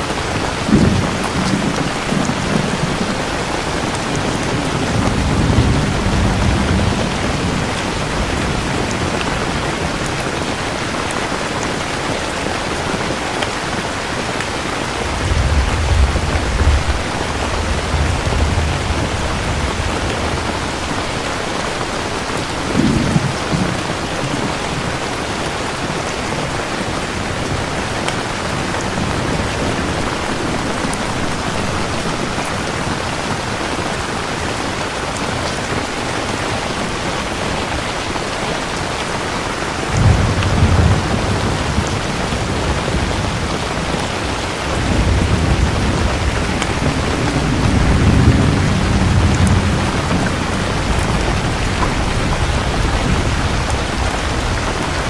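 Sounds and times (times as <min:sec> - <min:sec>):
heavy rain: 0:00.0 - 0:55.0
distant thunder rumbling: 0:00.1 - 0:10.6, 0:14.8 - 0:25.3, 0:39.8 - 0:55.0.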